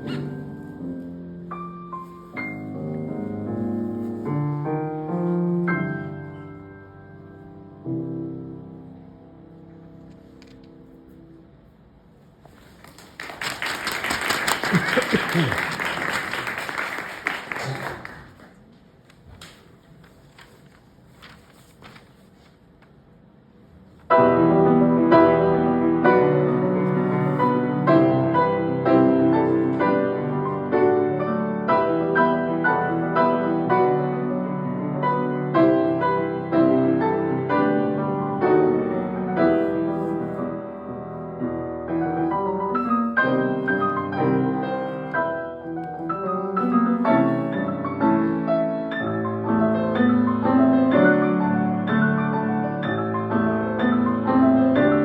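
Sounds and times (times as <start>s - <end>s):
piano duet playing rapid notes: 0.0s - 10.0s, 24.1s - 55.0s.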